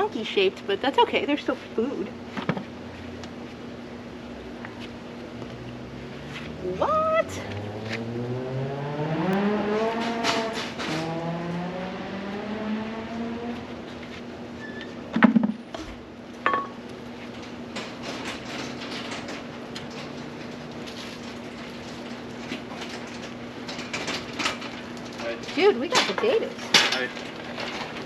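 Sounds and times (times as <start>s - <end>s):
engine running: 2.4s - 28.0s.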